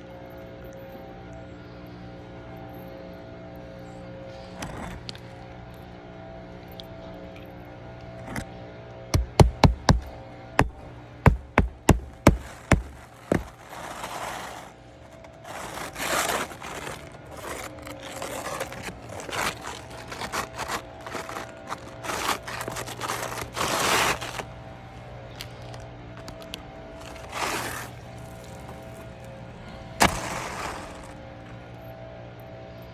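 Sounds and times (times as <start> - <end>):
sharp knocks: 9.2 - 13.5
scraping and rustling strokes: 9.2 - 31.7.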